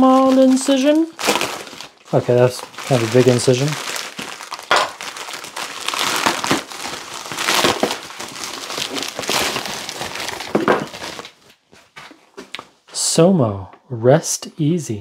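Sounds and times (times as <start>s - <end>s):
packaging wrap crinkling: 0.0s - 12.7s.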